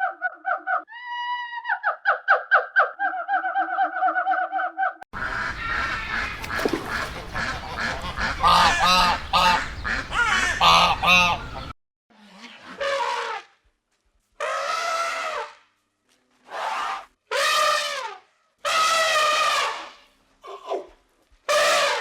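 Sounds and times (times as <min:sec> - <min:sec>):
geese honking: 0:05.2 - 0:11.7
background noise: 0:12.4 - 0:22.0.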